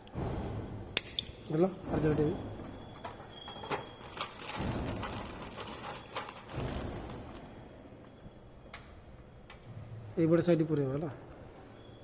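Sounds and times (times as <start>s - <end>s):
cable wires rustling: 2.6s - 7.5s.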